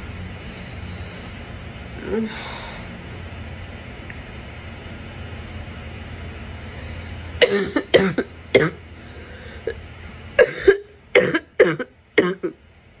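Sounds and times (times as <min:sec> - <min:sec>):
person coughing harshly: 0:07.4 - 0:08.9, 0:10.4 - 0:12.6.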